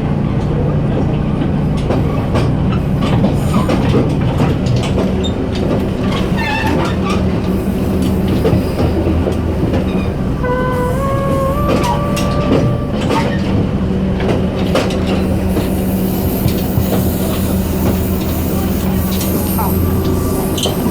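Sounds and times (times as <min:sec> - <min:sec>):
diesel train drone and rumble: 0:00.0 - 0:20.9
brief squealing tone: 0:10.4 - 0:13.5.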